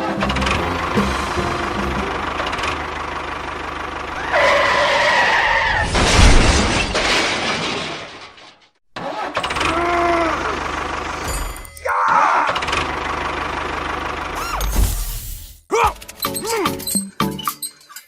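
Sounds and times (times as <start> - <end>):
small engine running: 0.0 - 4.4, 9.4 - 11.6, 12.5 - 14.5.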